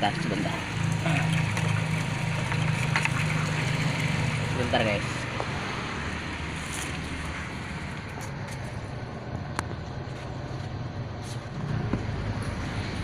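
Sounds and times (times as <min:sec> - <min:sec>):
electric water pump humming: 0:00.0 - 0:09.4.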